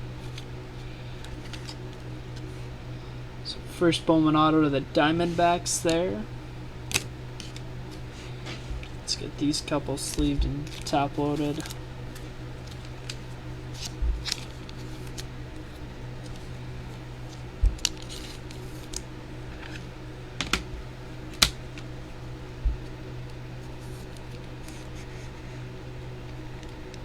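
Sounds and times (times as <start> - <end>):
steady low hum: 0.0 - 27.0
plastic card sleeves clicking: 10.0 - 15.3.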